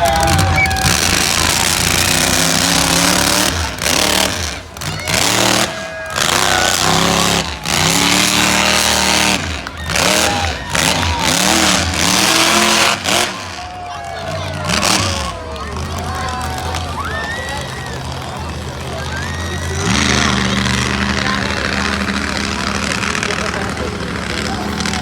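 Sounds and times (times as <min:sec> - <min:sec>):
monster truck engine revving: 0:00.0 - 0:25.0.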